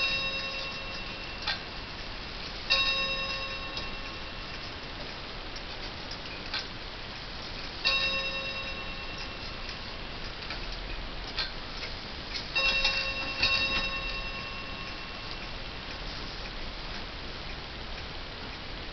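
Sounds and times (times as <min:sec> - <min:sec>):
clock chime strokes: 0:00.0 - 0:01.9, 0:02.7 - 0:04.7, 0:07.8 - 0:10.0, 0:12.6 - 0:15.7.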